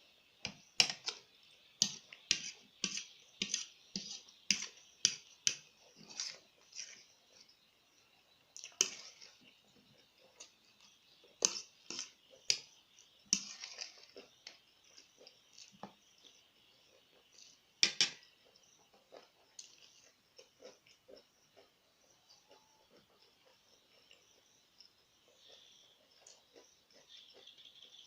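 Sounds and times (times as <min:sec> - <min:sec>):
person chewing food: 0:08.3 - 0:28.0.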